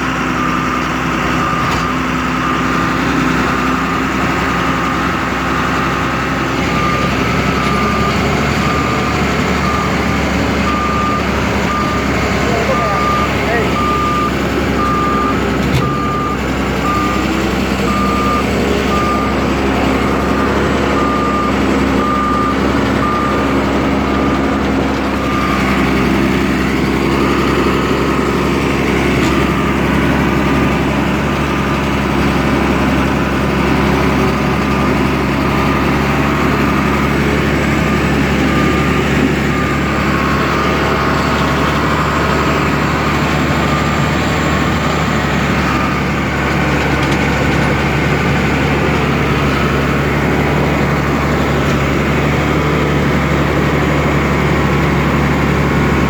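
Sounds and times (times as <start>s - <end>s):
diesel engine running: 0.0s - 56.0s
backup alarm beeping: 6.7s - 26.5s.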